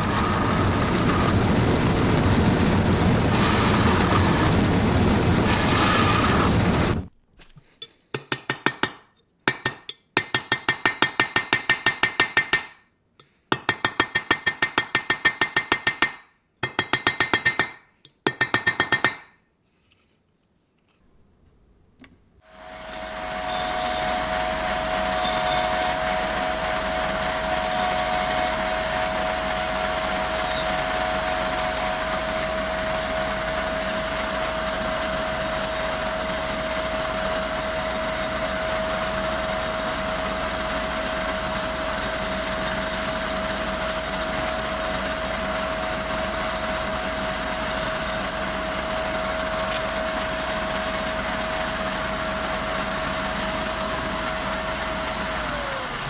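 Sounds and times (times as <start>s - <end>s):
power tool motor whining: 0.0s - 7.1s, 22.4s - 56.0s.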